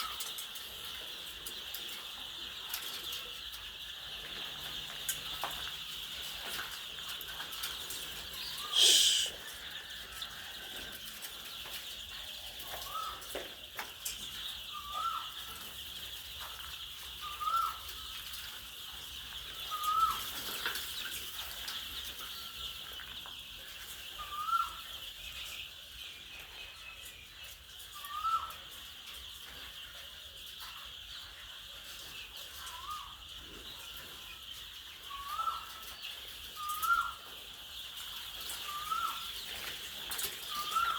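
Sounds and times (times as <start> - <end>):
chicken short rising call: 8.6 - 9.4.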